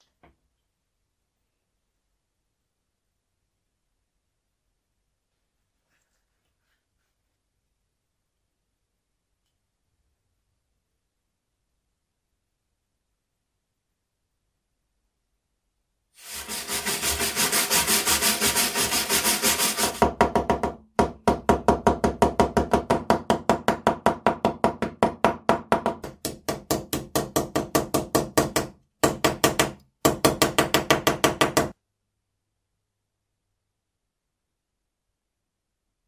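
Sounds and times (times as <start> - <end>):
hand saw rubbing strokes: 16.2 - 20.0.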